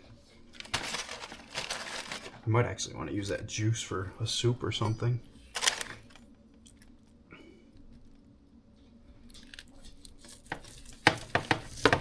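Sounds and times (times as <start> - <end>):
knife knocking on cutting board: 11.1 - 12.0.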